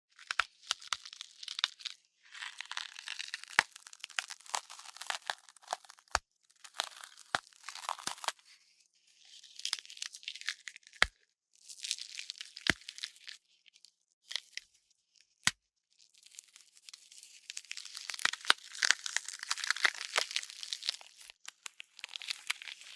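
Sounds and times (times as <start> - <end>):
bone cracks: 0.2 - 8.4, 9.6 - 11.2, 11.8 - 13.4, 17.5 - 22.9
wet flesh tearing: 0.2 - 8.4, 9.6 - 13.4, 15.4 - 22.9.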